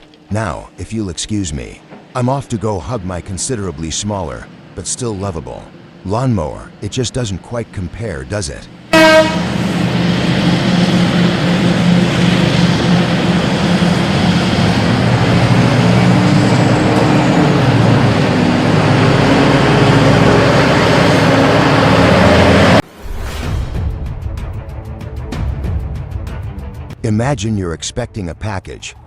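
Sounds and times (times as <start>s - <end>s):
heavy diesel machinery running: 0.0s - 22.9s.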